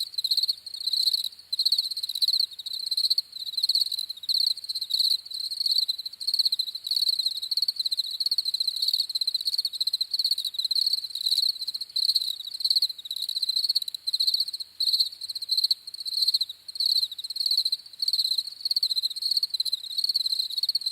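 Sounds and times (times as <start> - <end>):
crickets chirping: 0.0 - 20.9.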